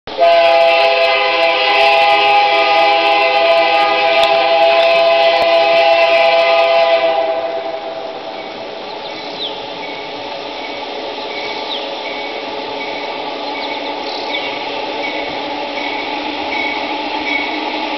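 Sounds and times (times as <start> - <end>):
model locomotive engine running: 0.2 - 7.2
model locomotive multi-chime horn: 0.2 - 7.6.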